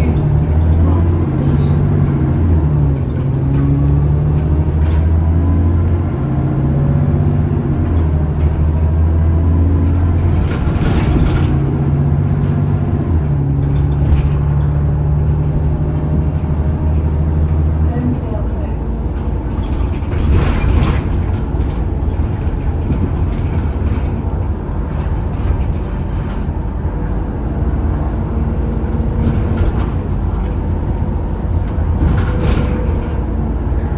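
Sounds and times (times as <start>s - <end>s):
bus engine drone: 0.0s - 33.9s.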